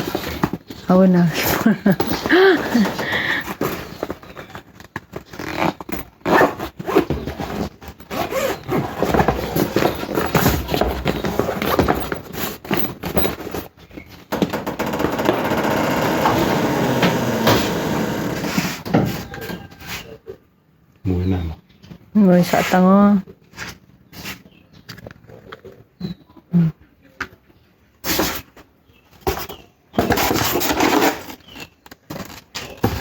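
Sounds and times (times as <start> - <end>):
packaging scraping and knocking: 0.0 - 19.8, 29.2 - 33.0
scraping rustle: 0.0 - 20.2.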